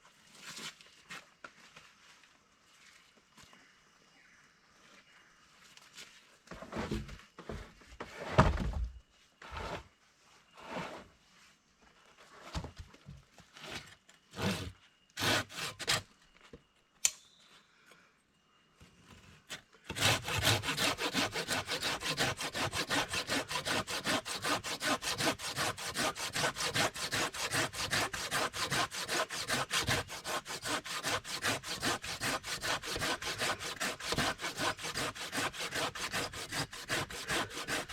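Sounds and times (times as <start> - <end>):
hand saw cutting timber: 13.6 - 16.0, 19.8 - 37.9.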